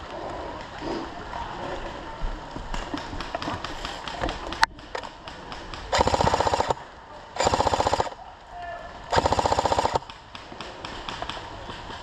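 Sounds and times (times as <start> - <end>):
rustling of movement: 0.0 - 12.0
rapid automatic airsoft gunfire: 5.2 - 6.8, 7.4 - 8.2, 9.1 - 12.0.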